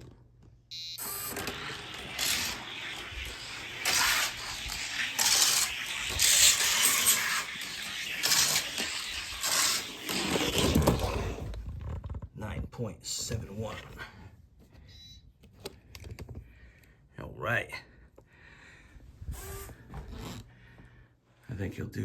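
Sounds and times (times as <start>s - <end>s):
toy car rolling on track: 1.0s - 11.6s.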